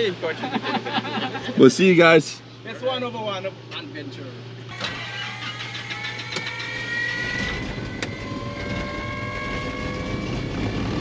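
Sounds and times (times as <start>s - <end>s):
small plane engine starting: 4.7s - 11.0s.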